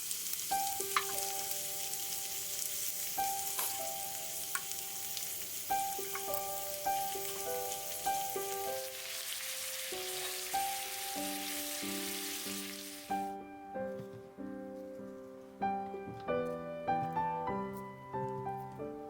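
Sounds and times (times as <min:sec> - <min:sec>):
food sizzling in a pan: 0:00.0 - 0:13.4.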